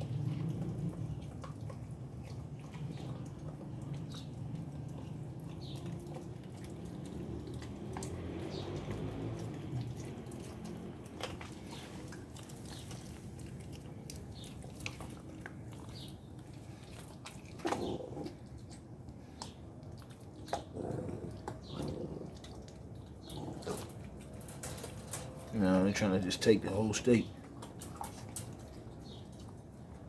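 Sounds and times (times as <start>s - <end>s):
puppies chewing and tearing meat: 0.0s - 30.0s
puppy vocal sounds: 17.1s - 18.8s, 20.0s - 24.9s.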